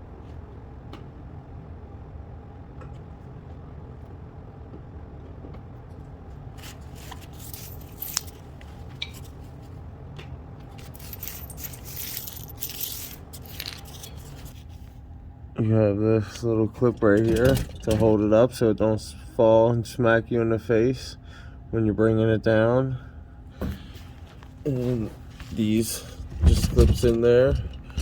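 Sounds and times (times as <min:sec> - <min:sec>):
steady low hum: 0:00.0 - 0:28.0
parts scraping and rustling: 0:06.5 - 0:09.8, 0:10.6 - 0:15.0, 0:23.8 - 0:28.0.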